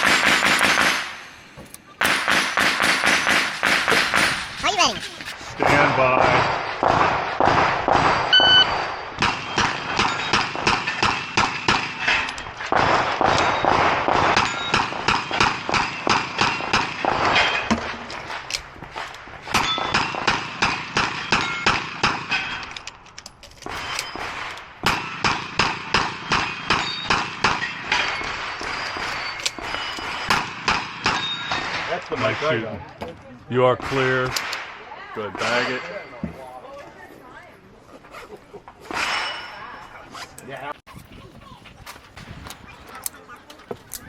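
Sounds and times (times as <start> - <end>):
electronic timer beep: 8.3 - 8.8.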